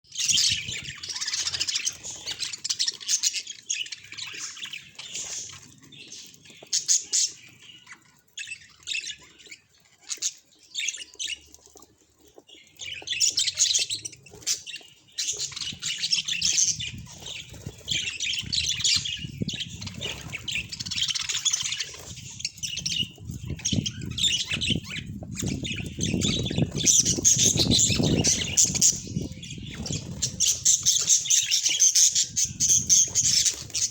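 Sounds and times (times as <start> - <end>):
budgerigars chirping and squawking: 0.1 - 33.9.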